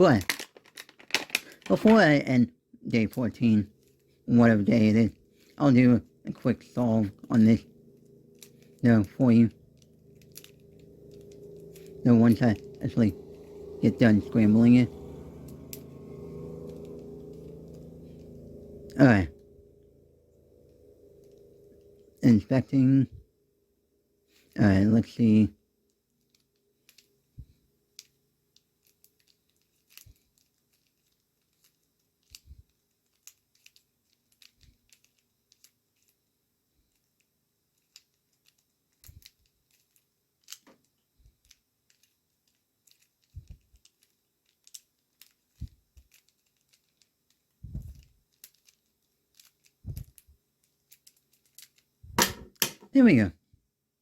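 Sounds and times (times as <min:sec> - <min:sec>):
plastic puzzle cube clicking: 0:00.1 - 0:01.9
puzzle cube knocks: 0:52.2 - 0:52.9.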